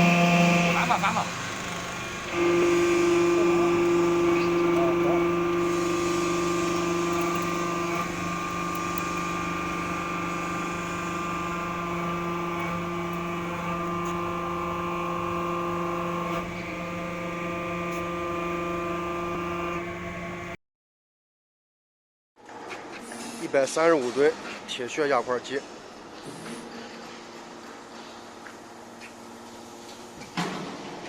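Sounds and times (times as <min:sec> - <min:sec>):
electric motor and hydraulic pump humming: 0:00.0 - 0:20.6.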